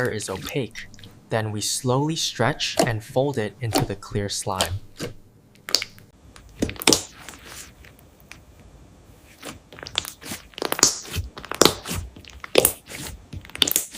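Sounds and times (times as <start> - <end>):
slime clicking and popping: 5.6 - 6.0, 6.6 - 7.1, 9.8 - 12.8, 13.4 - 13.9.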